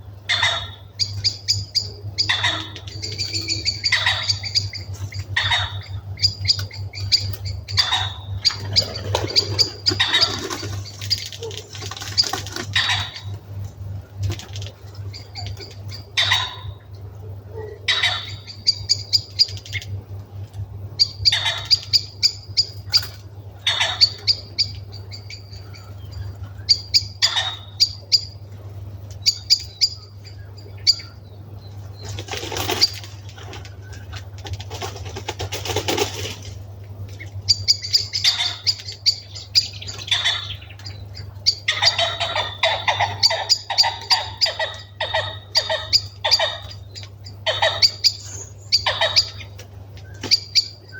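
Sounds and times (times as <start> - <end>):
birds calling: 0.0 - 50.9
wing flutters and rustling: 8.4 - 15.9, 31.7 - 37.5.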